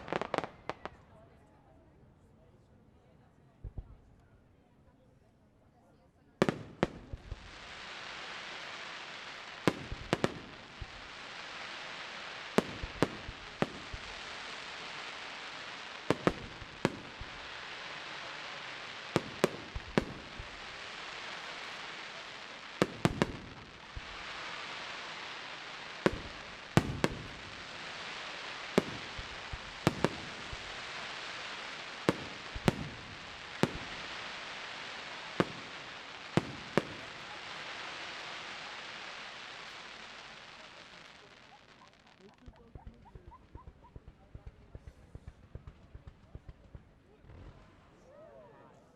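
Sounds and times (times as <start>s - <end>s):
steady hiss: 0.0s - 0.8s, 6.4s - 42.4s
fireworks bursting: 0.0s - 1.1s, 3.6s - 4.2s, 6.4s - 48.1s.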